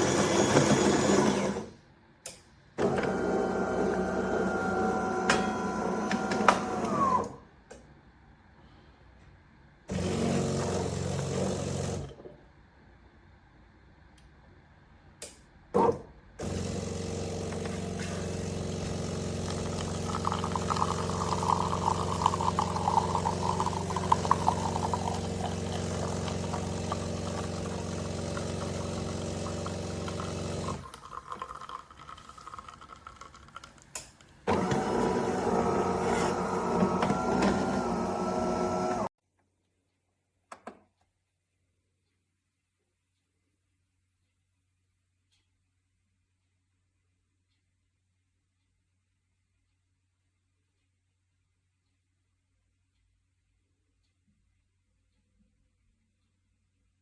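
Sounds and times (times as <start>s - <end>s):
espresso machine motor hum: 16.4s - 33.8s, 34.5s - 39.1s.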